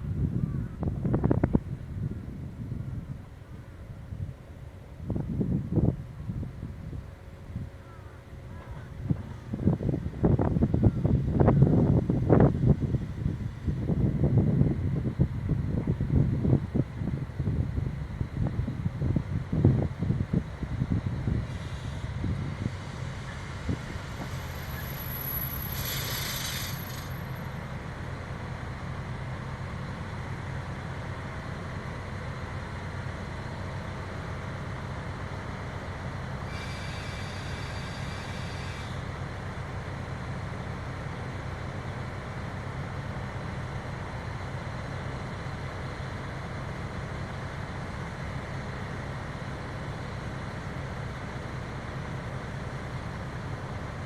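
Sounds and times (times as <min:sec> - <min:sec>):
diesel railcar engine rumble: 0:00.0 - 0:54.0
air release hiss: 0:24.1 - 0:27.4, 0:36.5 - 0:39.0.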